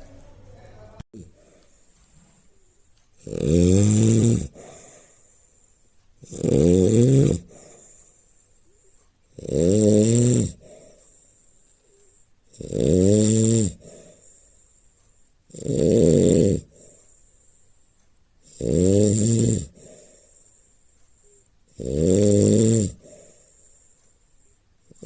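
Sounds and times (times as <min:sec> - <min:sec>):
loud snoring: 0:03.2 - 0:05.1, 0:06.2 - 0:07.9, 0:09.3 - 0:11.0, 0:12.5 - 0:14.2, 0:15.5 - 0:17.0, 0:18.4 - 0:20.2, 0:21.7 - 0:23.4.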